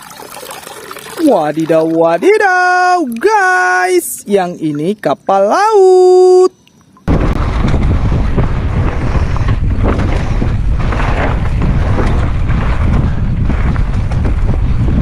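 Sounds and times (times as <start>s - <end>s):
water rushing and splashing: 0.0s - 5.1s.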